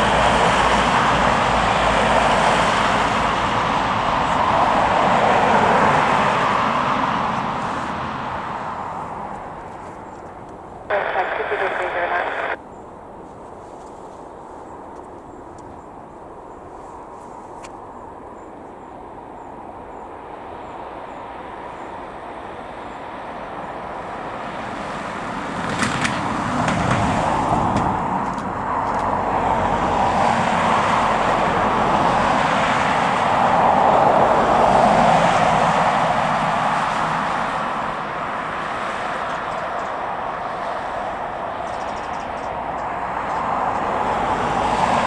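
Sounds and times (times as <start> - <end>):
jet airliner engines rushing: 0.0 - 9.6, 10.9 - 12.6.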